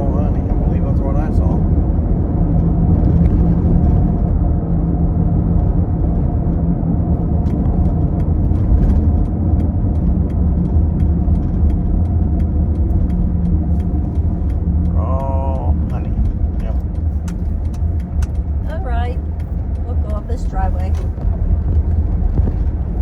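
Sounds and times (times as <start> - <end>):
car engine and road noise: 0.0 - 23.0.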